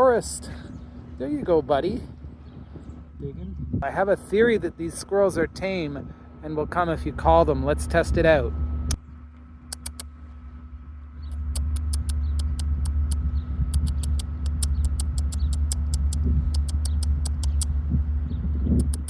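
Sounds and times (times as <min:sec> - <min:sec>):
steady low rumble: 0:00.0 - 0:19.0
person making mouth clicks: 0:09.7 - 0:10.1, 0:11.3 - 0:17.7, 0:18.8 - 0:19.0.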